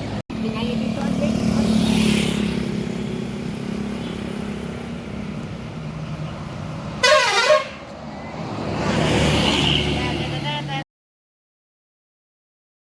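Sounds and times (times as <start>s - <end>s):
engine and road noise: 0.0s - 10.9s
bus air horn blast: 7.0s - 7.9s.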